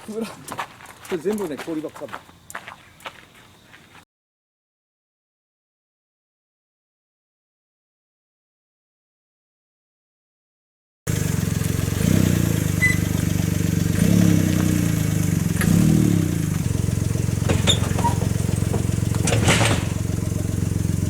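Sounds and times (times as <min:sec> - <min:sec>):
engine running steadily: 0:11.1 - 0:21.0.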